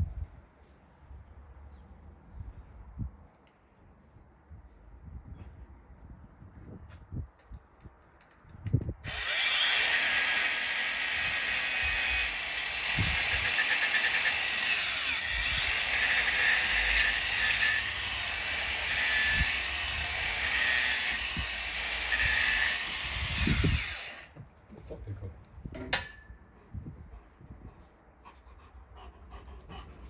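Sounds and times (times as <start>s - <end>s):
angle grinder cutting metal: 9.1s - 24.3s.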